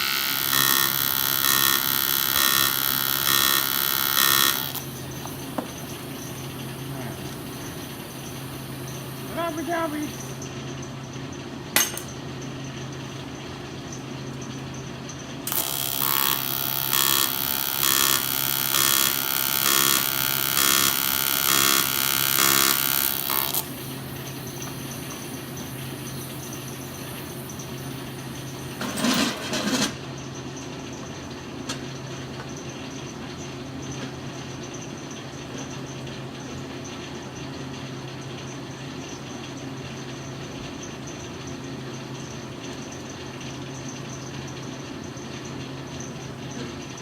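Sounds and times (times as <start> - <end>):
power tool pulsing: 0.0 - 10.4, 15.5 - 29.4
steady shop hum: 0.0 - 47.0.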